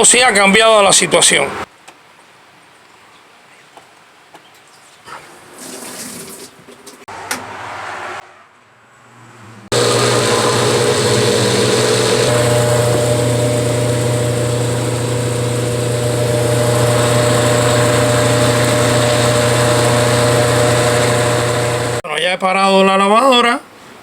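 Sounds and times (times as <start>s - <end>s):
washing machine spinning: 9.7s - 22.0s.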